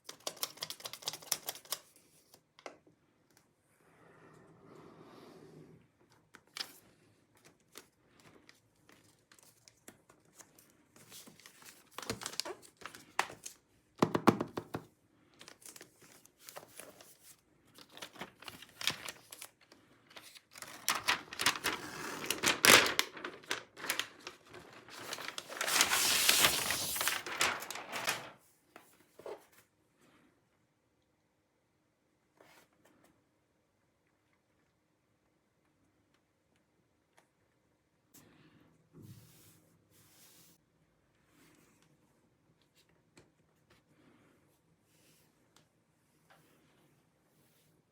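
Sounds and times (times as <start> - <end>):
packaging crinkling and tearing: 11.2 - 13.6, 17.8 - 28.4.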